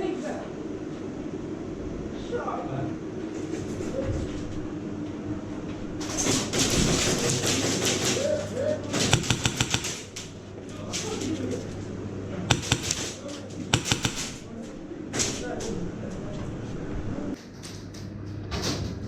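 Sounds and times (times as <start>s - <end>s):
sharp airsoft gun shots: 9.2s - 10.0s, 12.5s - 13.1s, 13.8s - 14.4s.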